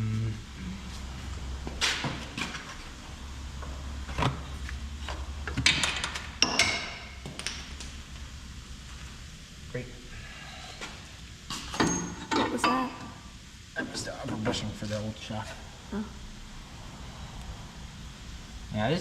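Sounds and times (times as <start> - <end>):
low steady hum: 0.0 - 19.0
short metallic ring: 11.8 - 12.2.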